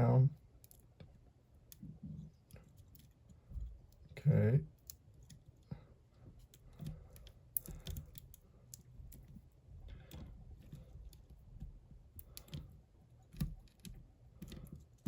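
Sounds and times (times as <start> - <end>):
lock pick clicking and scraping: 6.4 - 15.0.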